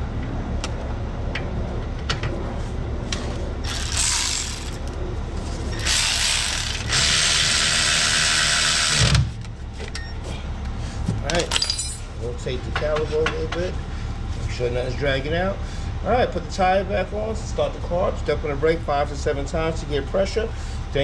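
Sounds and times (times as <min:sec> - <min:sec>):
ratchet wrench clicking: 0:03.7 - 0:04.8, 0:05.8 - 0:07.8.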